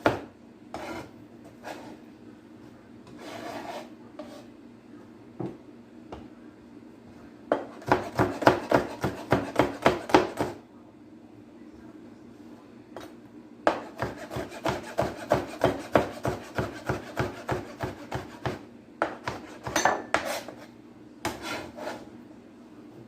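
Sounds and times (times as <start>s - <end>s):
knife chopping on cutting board: 0.0s - 1.9s, 7.5s - 10.6s, 13.7s - 20.6s, 21.2s - 22.0s.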